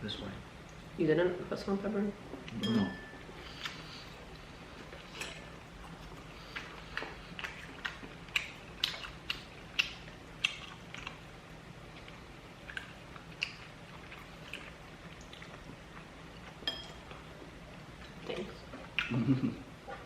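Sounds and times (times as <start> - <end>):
chewing crispy fried chicken: 3.4 - 20.0.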